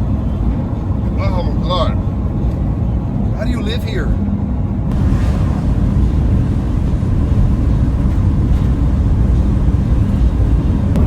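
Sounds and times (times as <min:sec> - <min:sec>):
strong wind noise: 0:00.0 - 0:11.0
van driving on highway: 0:00.0 - 0:11.0.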